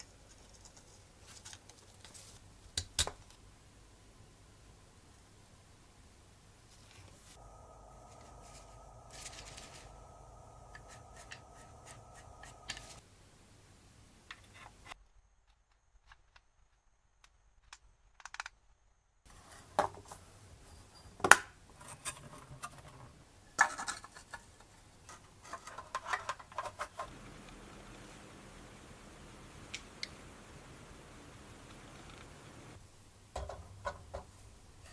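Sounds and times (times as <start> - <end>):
faint steady hum: 0.0 - 17.7, 18.8 - 34.9
small parts and tools clicking: 17.2 - 18.7, 21.7 - 24.4.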